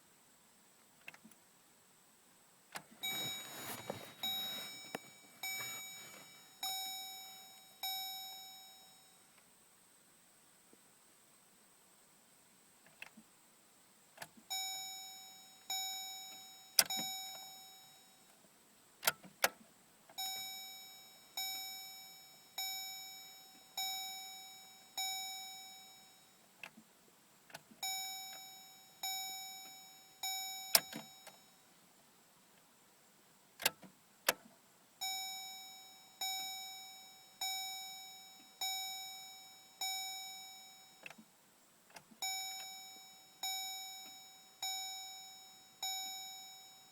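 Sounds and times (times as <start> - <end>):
dashboard warning chime dings: 3.0 - 9.2, 14.5 - 18.2, 20.2 - 26.4, 27.8 - 31.6, 35.0 - 41.2, 42.2 - 46.9.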